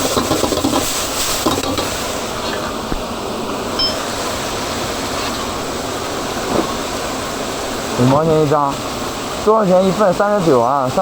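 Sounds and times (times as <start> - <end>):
pots and utensils clinking: 0.0 - 2.0
cooking hiss: 0.0 - 11.0
high beep: 3.8 - 4.1.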